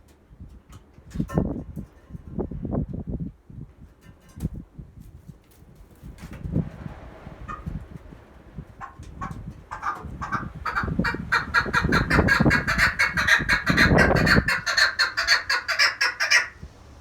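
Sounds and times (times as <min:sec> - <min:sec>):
partridge clucking call: 0:08.8 - 0:16.7.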